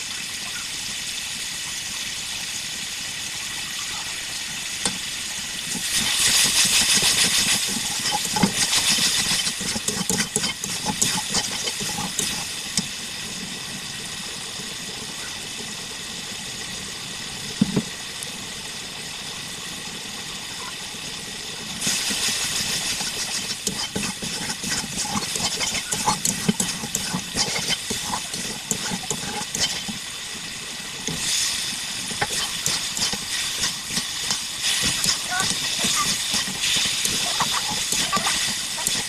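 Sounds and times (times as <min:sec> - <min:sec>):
food sizzling in hot oil: 0:00.0 - 0:39.0.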